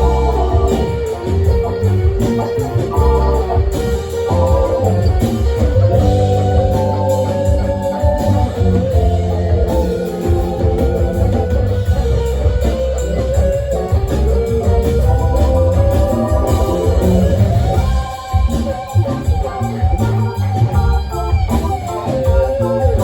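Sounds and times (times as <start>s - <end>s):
deep bass: 0.0s - 23.0s
rock guitar lines: 0.0s - 23.0s.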